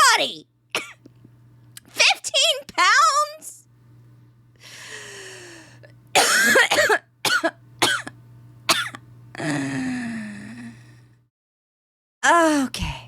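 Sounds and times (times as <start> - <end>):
woman coughing and laughing: 0.8 - 1.0, 6.2 - 9.0
woman breathy groan: 9.4 - 10.8.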